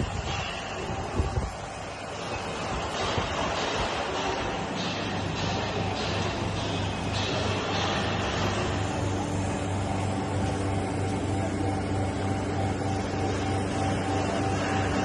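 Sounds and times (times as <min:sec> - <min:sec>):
vacuum packing machine humming: 0:07.3 - 0:15.0.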